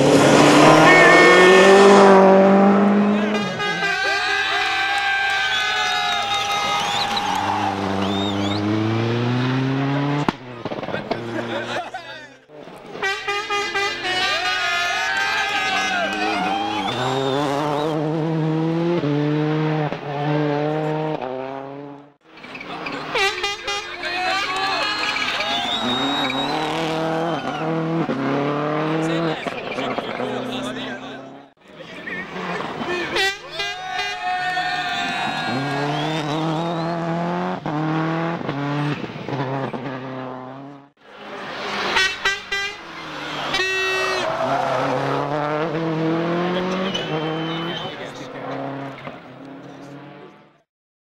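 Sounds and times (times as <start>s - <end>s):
rally car engine at high revs: 0.0s - 3.9s, 6.8s - 11.9s, 15.9s - 22.2s, 25.0s - 31.6s, 32.2s - 33.3s, 35.3s - 42.1s, 42.8s - 50.4s.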